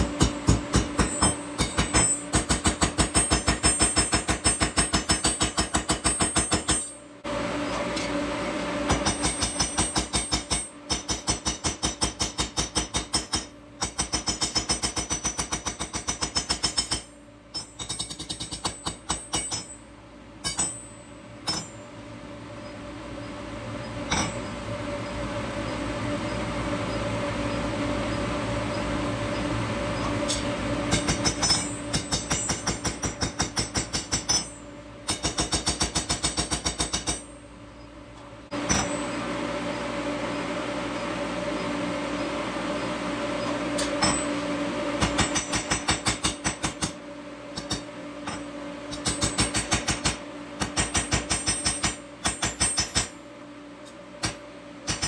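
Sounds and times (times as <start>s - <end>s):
induction forge humming: 16.8s - 36.0s.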